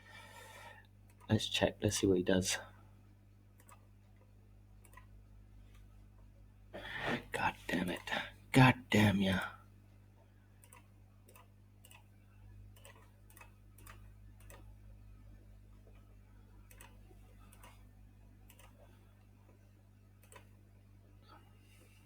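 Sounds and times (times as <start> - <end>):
low electrical hum: 0.0 - 22.0
computer mouse clicks: 1.0 - 1.3, 3.6 - 5.9, 10.6 - 12.1, 12.7 - 14.7, 15.8 - 19.6, 20.2 - 20.6.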